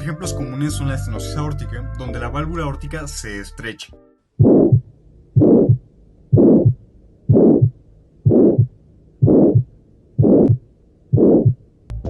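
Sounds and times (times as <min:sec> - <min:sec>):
heart murmur: 0:04.4 - 0:11.6
heartbeat: 0:04.4 - 0:11.6.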